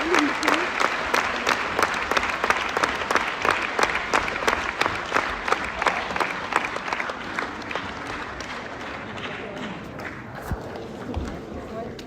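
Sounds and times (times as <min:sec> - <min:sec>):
audience applauding: 0:00.0 - 0:10.9.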